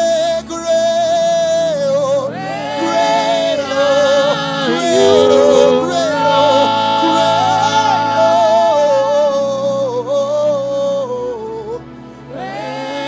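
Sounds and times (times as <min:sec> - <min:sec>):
held keyboard chords: 0:02.8 - 0:08.4
person singing wordless notes: 0:02.8 - 0:09.2.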